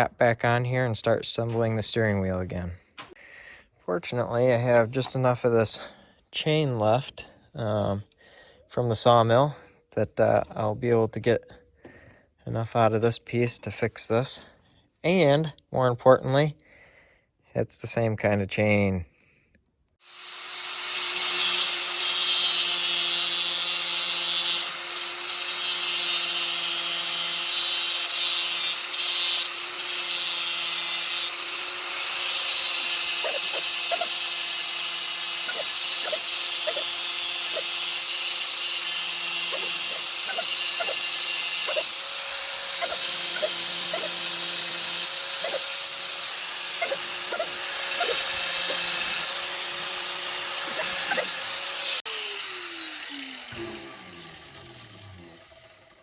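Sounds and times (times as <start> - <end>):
power tool whirring: 20.0 - 56.0.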